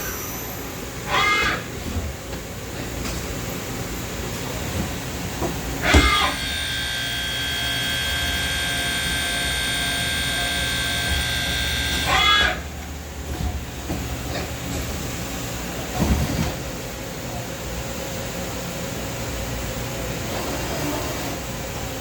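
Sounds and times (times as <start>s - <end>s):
machine high-pitched whine: 0.0s - 2.2s, 3.6s - 13.2s
low machine hum: 0.0s - 22.0s.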